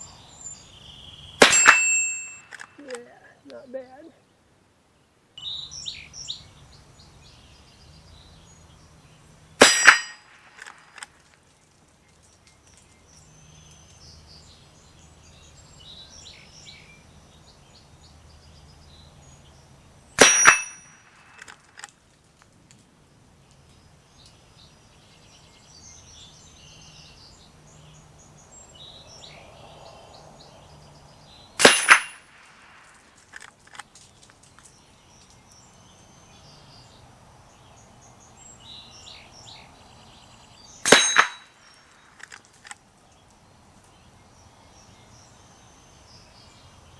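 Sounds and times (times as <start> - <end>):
rifle shots: 1.4 - 2.1, 9.6 - 11.0, 20.2 - 20.9, 31.6 - 32.8, 40.8 - 41.4.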